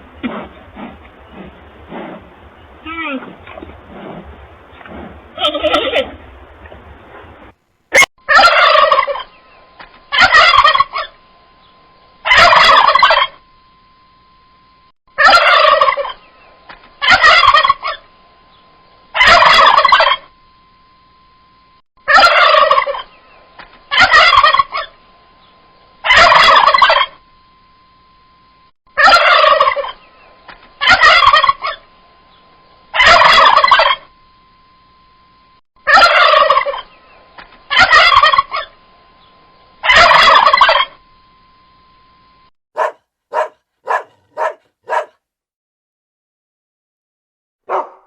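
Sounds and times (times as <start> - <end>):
turkey gobbling: 0.0 - 9.5, 10.1 - 11.2, 12.2 - 13.4, 15.2 - 16.3, 17.0 - 18.1, 19.2 - 20.3, 22.1 - 23.3, 23.9 - 25.0, 26.0 - 27.2, 29.0 - 30.2, 30.8 - 31.9, 32.9 - 34.1, 35.8 - 37.1, 37.7 - 38.8, 39.8 - 41.0, 42.8 - 45.1
faint steady tone: 0.0 - 16.7, 17.5 - 23.6, 24.2 - 42.5
short sharp turkey calls: 8.0 - 9.4, 10.1 - 11.2, 15.2 - 16.2, 17.0 - 18.0, 19.2 - 20.3, 22.1 - 23.2, 23.9 - 24.9, 26.0 - 27.2, 29.0 - 30.1, 30.8 - 31.8, 33.0 - 34.1, 35.9 - 38.8, 39.8 - 41.0.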